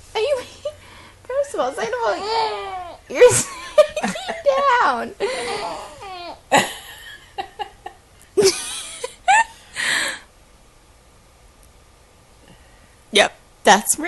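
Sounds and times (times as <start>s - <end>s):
baby squealing and grunting: 1.8s - 3.1s, 5.5s - 6.4s.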